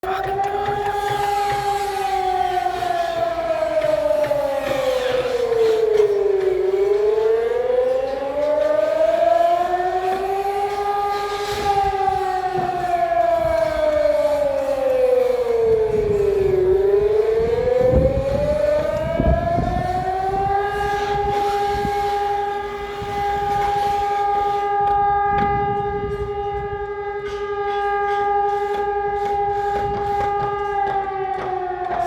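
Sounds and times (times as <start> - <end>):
air raid siren: 0.0 - 32.0.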